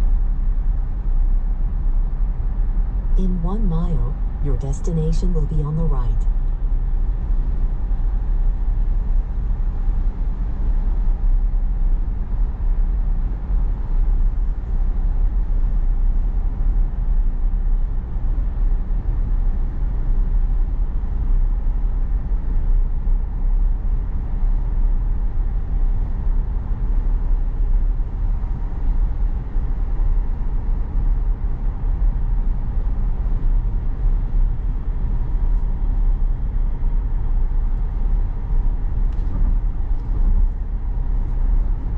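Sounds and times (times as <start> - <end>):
road and tyre rumble in car: 0.0 - 41.9.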